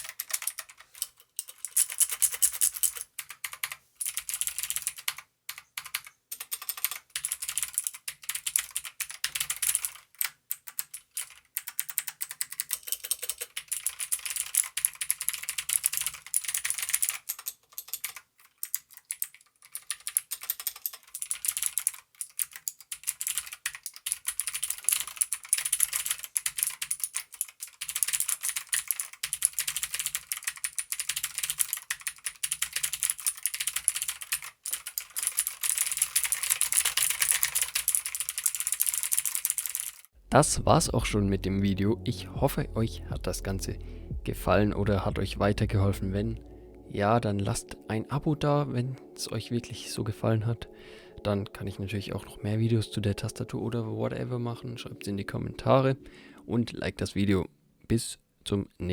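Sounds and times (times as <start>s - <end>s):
mechanical keyboard typing: 0.0s - 40.1s.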